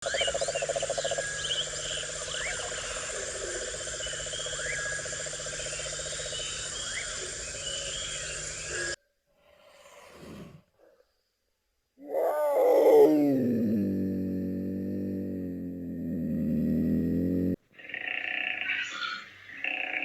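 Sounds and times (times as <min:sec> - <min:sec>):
frogs pulsing trill: 0:00.0 - 0:09.0, 0:17.8 - 0:20.0.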